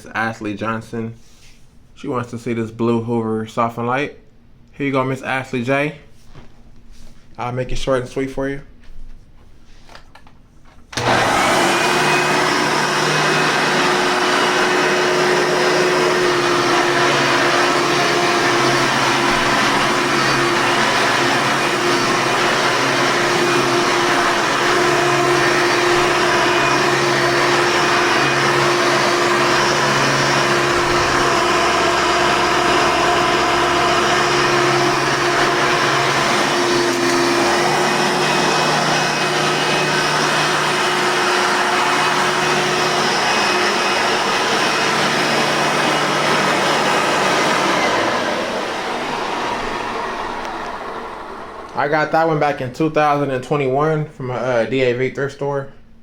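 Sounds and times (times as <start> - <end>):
vacuum cleaner running: 10.9 - 53.1.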